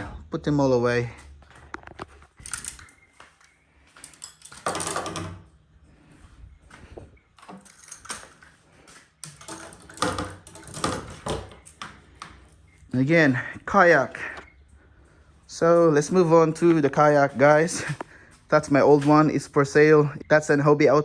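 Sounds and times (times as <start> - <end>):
rustling and rattling: 1.5 - 3.1, 4.0 - 12.8
fishing gear clicks and clattering: 1.7 - 5.5, 7.3 - 12.5.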